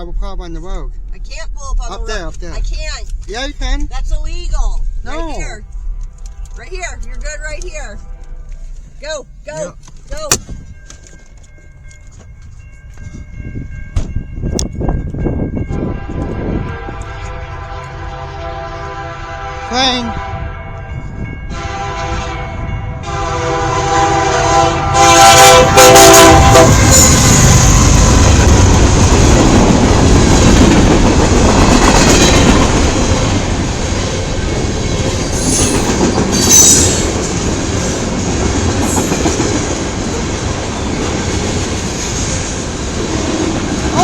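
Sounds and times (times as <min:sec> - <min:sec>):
freight train rumbling past: 0:00.0 - 0:44.0
locomotive horn blasts: 0:07.9 - 0:08.8, 0:15.7 - 0:27.6
high wheel squeals: 0:26.6 - 0:27.9, 0:35.1 - 0:37.2.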